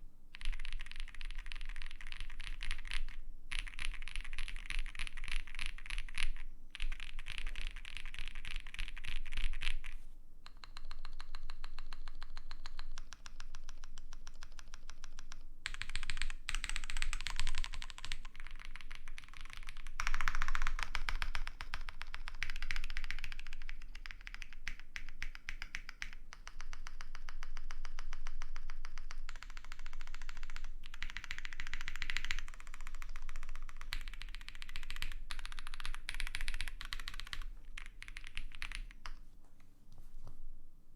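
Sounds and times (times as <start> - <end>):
fast mechanical keyboard typing: 0.4 - 10.0, 14.2 - 26.1, 29.3 - 39.1.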